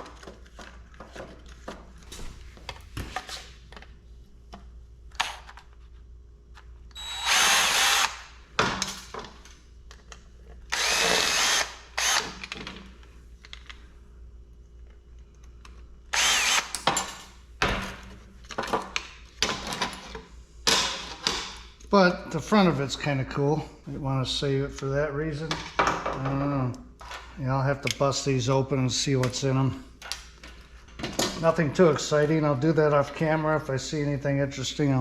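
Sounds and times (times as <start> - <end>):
power drill running: 7.0 - 8.3, 10.7 - 12.4, 16.1 - 16.8.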